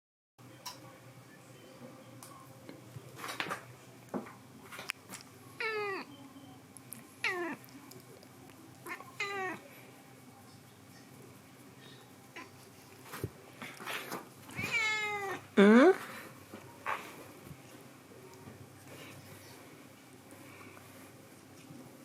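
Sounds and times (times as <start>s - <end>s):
cat meowing: 5.6s - 6.1s, 7.2s - 7.7s, 8.8s - 9.6s, 14.5s - 15.4s.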